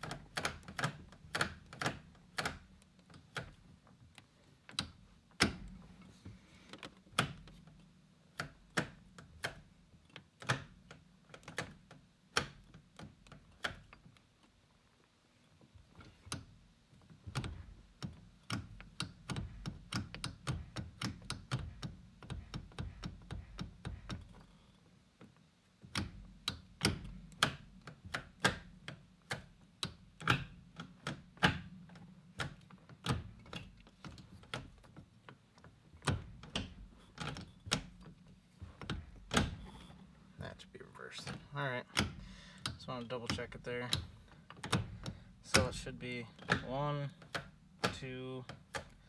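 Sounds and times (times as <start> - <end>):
sharp metallic clicks and knocks: 0.0 - 5.8, 15.8 - 49.0.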